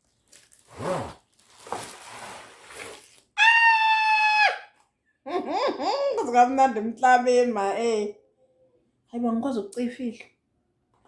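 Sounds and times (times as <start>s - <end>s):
cardboard packaging rustling: 0.0s - 3.4s.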